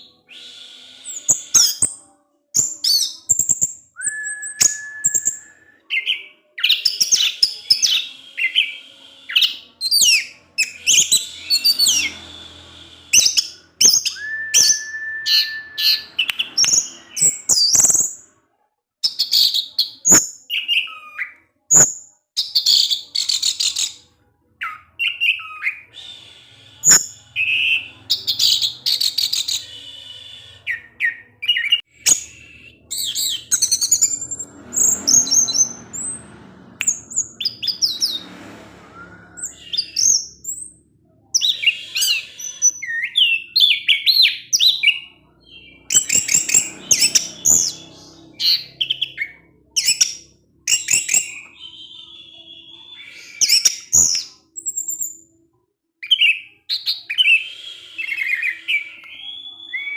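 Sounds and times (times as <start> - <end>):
thrush singing high chirps: 0.0 - 18.4, 24.8 - 55.3.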